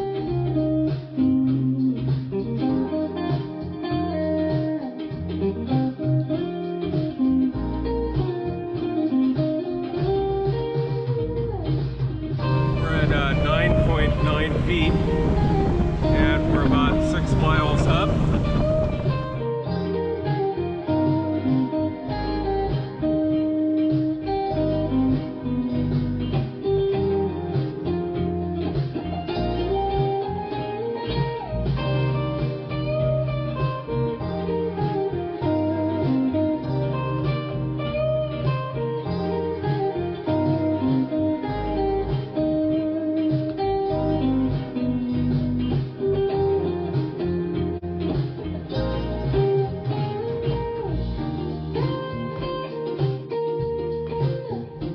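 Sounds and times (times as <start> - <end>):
bluesy guitar instrumental: 0.0 - 54.9
steady bass: 10.1 - 23.5, 24.2 - 52.6.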